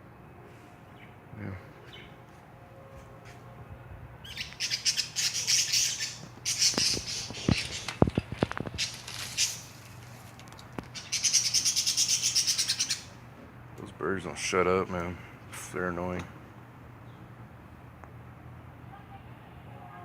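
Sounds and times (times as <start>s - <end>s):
birds chattering squawks: 4.2s - 9.9s, 10.8s - 13.3s.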